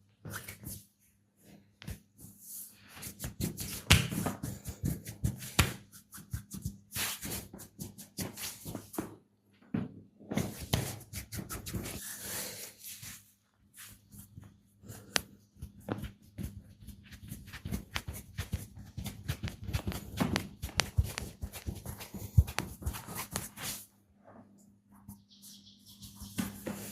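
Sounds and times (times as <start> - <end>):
hands rubbing skin: 15.6 - 23.9.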